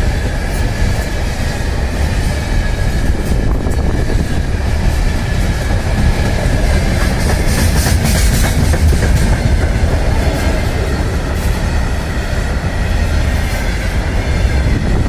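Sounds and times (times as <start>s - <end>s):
freight train wheels rumbling: 0.0s - 15.0s.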